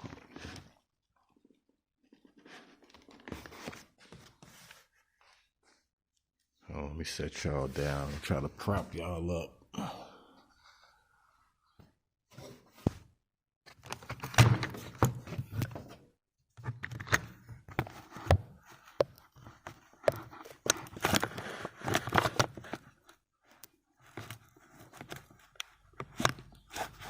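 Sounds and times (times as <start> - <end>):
packaging rustling: 19.4 - 23.1.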